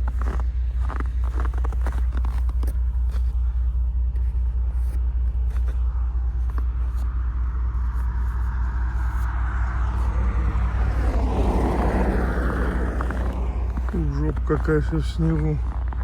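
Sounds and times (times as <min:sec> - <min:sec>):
diesel engine idling: 0:00.0 - 0:16.0
footsteps crunching in snow: 0:00.0 - 0:16.0
rushing noise: 0:08.1 - 0:14.1.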